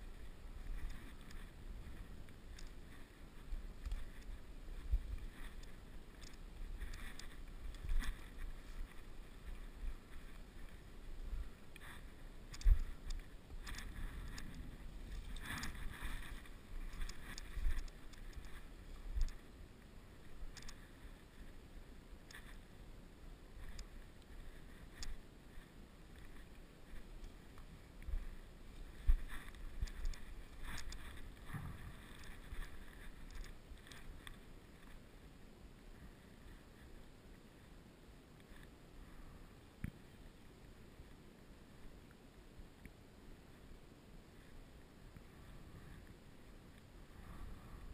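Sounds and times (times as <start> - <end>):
wind noise on microphone: 0.0 - 19.5.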